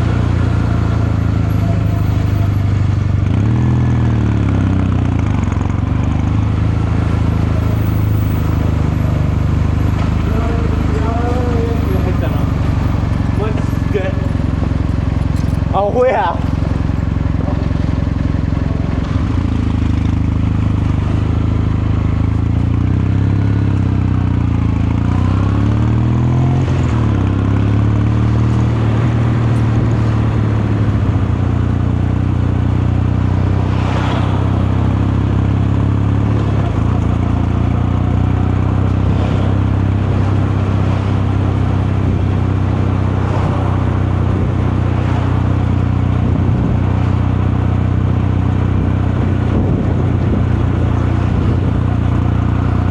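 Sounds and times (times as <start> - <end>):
motorcycle engine and exhaust: 0.0 - 52.9.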